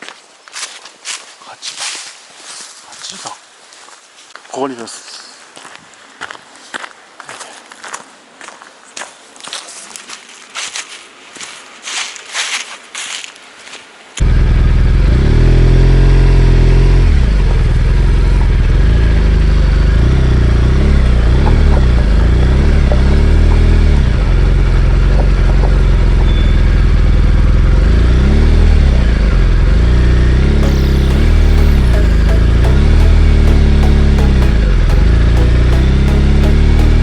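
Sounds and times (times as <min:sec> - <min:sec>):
motorcycle engine revving: 0:14.2 - 0:24.6
road and wind noise: 0:14.2 - 0:30.6.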